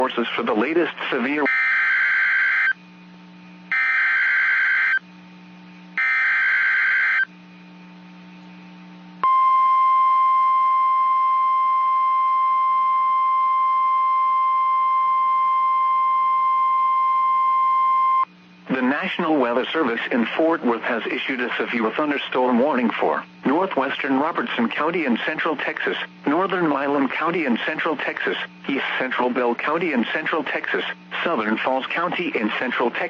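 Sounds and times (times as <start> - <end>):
high warning alarm tone: 1.5 - 2.8, 3.7 - 5.0, 6.0 - 7.3.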